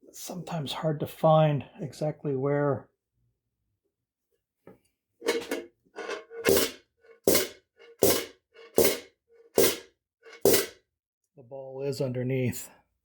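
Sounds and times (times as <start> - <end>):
hammer striking steel helmet: 6.4 - 10.8.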